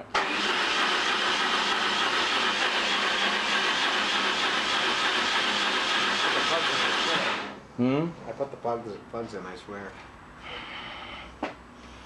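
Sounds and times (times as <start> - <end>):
engine cranking by starter motor: 0.1 - 7.6.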